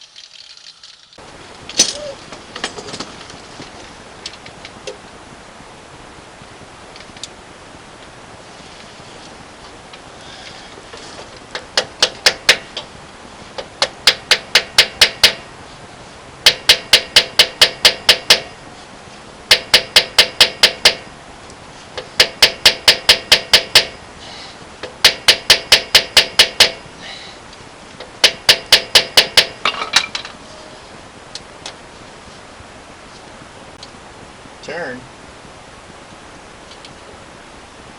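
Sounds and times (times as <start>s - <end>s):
hammer striking steel: 14.0s - 15.4s, 16.5s - 18.5s.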